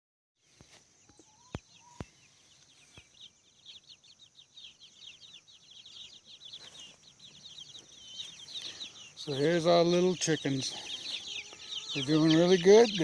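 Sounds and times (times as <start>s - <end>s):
chicks peeping: 0.5s - 13.0s.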